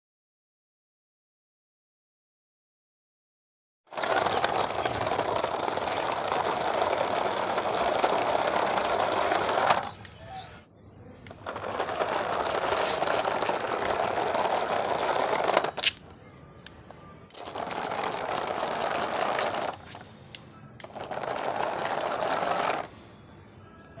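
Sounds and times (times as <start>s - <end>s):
small gear motors running: 3.9s - 10.0s, 11.3s - 16.0s, 17.3s - 20.0s, 20.8s - 22.9s.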